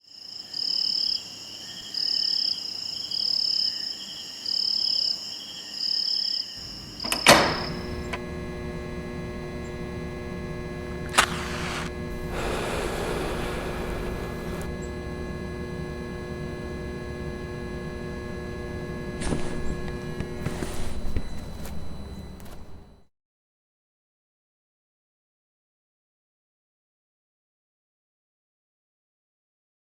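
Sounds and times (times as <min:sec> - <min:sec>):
electrical hum: 0:06.6 - 0:23.1
sharp clicks: 0:11.0 - 0:14.8
hiss: 0:11.2 - 0:14.7.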